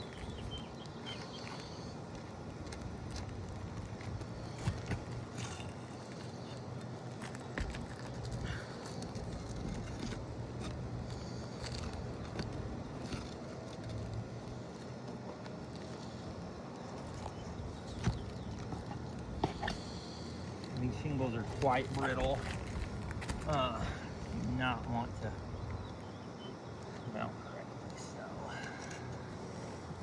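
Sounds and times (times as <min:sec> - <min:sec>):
steady low hum: 0:00.0 - 0:30.0
hand tools on roof shingles: 0:00.1 - 0:16.2, 0:17.0 - 0:24.1.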